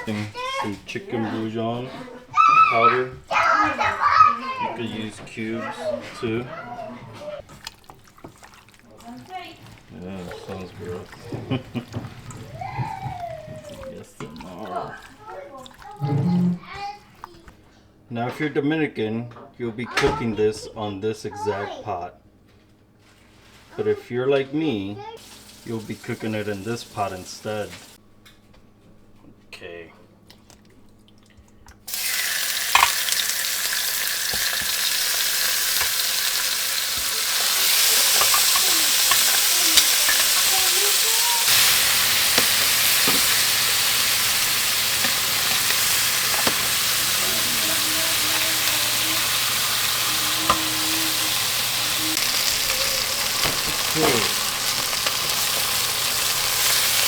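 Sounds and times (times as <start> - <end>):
chicken sizzling in hot oil: 25.2 - 28.0, 31.9 - 57.0
utensil knocking: 32.6 - 57.0.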